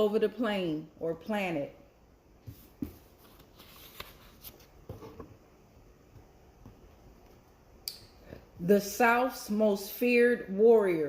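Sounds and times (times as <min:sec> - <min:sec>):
cards being handled: 0:02.6 - 0:04.8.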